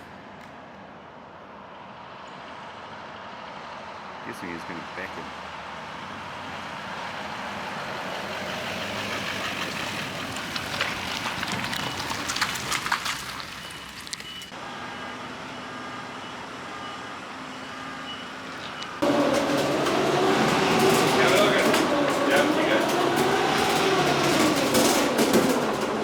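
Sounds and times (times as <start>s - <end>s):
heavy vehicle running: 0.0s - 26.0s
reversing beeper beeping: 13.6s - 22.9s
clicks and knocks: 19.0s - 26.0s.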